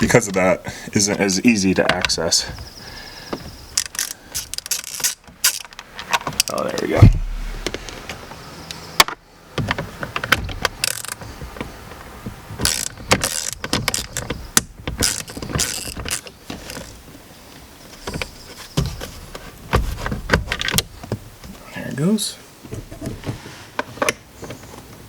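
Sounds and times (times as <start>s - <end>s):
hand tools clicking on metal: 3.7s - 6.8s, 10.2s - 11.2s, 12.6s - 14.4s, 15.0s - 17.0s.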